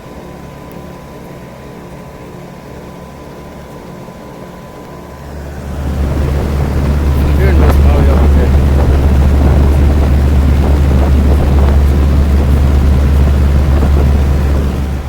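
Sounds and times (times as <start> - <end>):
heat pump unit humming: 0.0 - 15.0.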